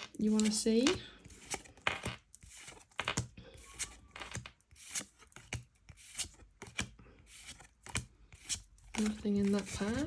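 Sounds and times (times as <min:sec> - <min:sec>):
trading cards scraping: 0:00.0 - 0:10.0.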